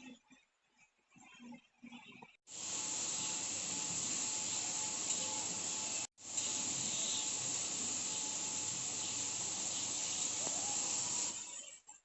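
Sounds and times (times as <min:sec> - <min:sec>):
food sizzling in hot oil: 0:02.5 - 0:11.8.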